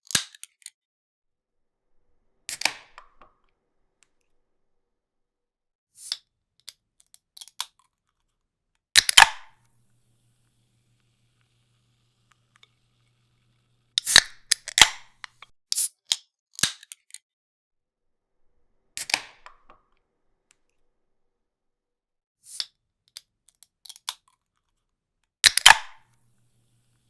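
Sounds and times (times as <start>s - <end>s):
drink can tab clicks: 9.0s - 9.5s, 14.0s - 15.5s, 25.4s - 26.0s
gas hissing from can: 10.4s - 14.8s.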